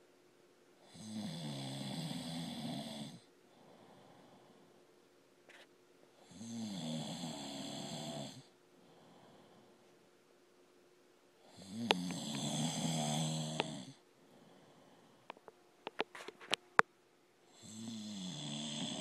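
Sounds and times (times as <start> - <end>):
man snoring: 0.8 - 4.6, 6.2 - 9.7, 11.4 - 15.2, 17.5 - 19.0
quiet breathing: 0.8 - 10.1, 11.4 - 16.6, 17.4 - 19.0.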